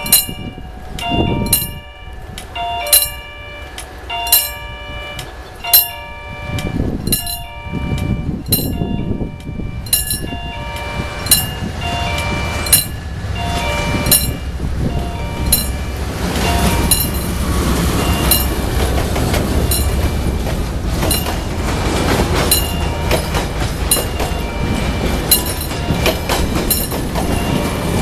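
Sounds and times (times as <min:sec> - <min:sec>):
low rumble of train: 0:00.0 - 0:28.0
railroad crossing bell: 0:00.0 - 0:28.0.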